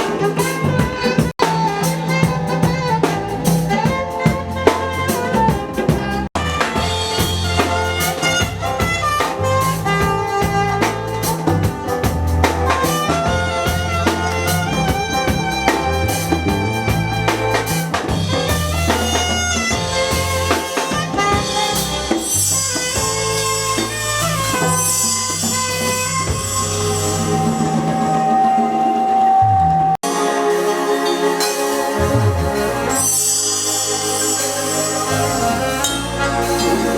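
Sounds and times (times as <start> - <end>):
live band playing instrumental: 0.0 - 36.9.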